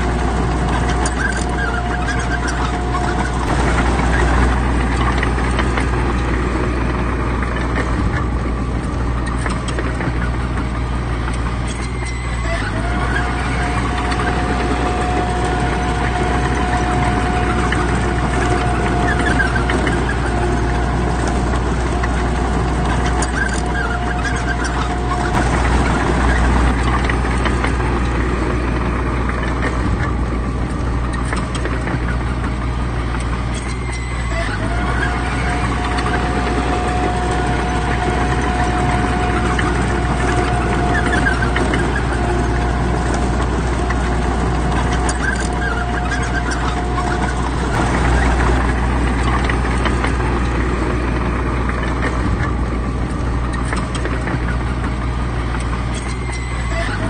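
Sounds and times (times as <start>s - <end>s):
heavy machinery diesel rumble: 0.0s - 57.0s
thin steady whine: 0.0s - 57.0s.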